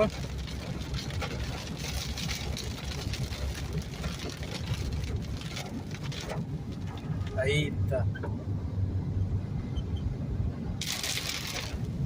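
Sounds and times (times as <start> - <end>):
heavy rain: 0.0 - 7.5, 10.8 - 12.0
low vehicle rumble: 0.0 - 12.0.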